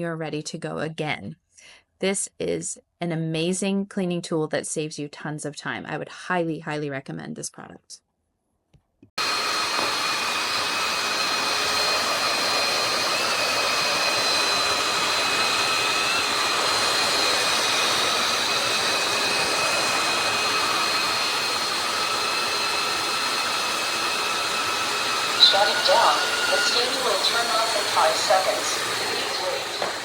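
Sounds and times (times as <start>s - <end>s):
high steady tones: 9.2s - 30.0s
wet-dry vacuum motor whine: 9.2s - 30.0s.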